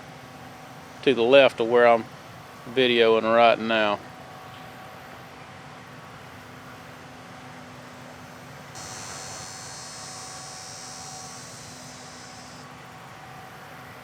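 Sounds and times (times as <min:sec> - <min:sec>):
low hum: 0:08.8 - 0:12.6
high hiss: 0:08.8 - 0:12.8
distant farm machinery running: 0:08.8 - 0:12.9.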